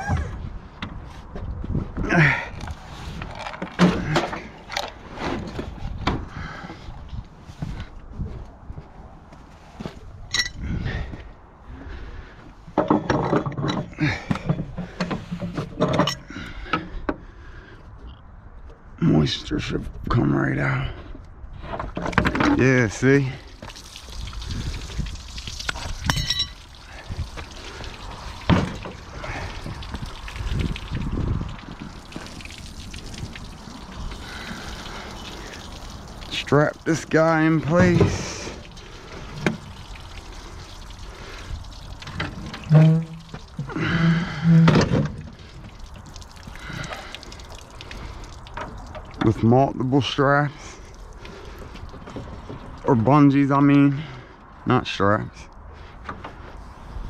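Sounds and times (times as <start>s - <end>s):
water pouring and trickling: 2.1s - 8.0s, 21.6s - 54.4s
knocks and clunks of metal tank: 12.7s - 17.0s, 28.4s - 32.0s, 42.1s - 45.3s
metal tank scraping: 42.1s - 45.4s.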